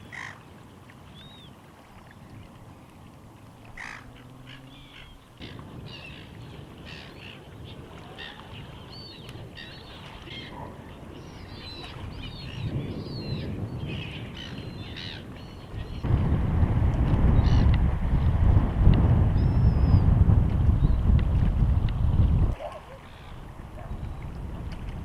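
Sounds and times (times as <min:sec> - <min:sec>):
birds chirping: 0:03.5 - 0:16.1.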